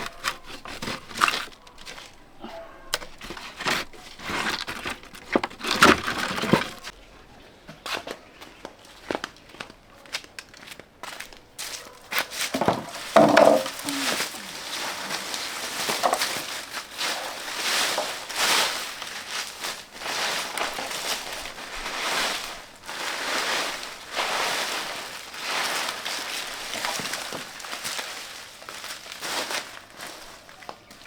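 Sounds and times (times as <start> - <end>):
leaves rustling and swishing: 11.6 - 31.0.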